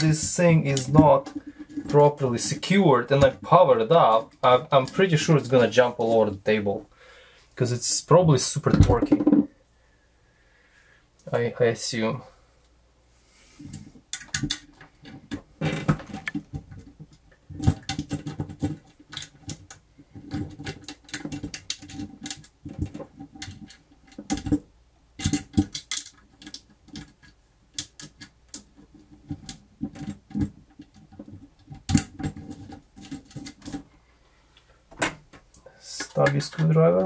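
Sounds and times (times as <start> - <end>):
tools and screws rattling: 13.7 - 33.9.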